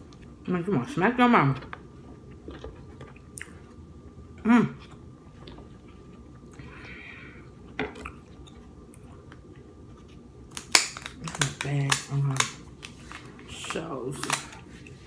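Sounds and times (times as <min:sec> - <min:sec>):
person chewing: 0:01.8 - 0:13.4
noisy crunch: 0:09.9 - 0:15.0.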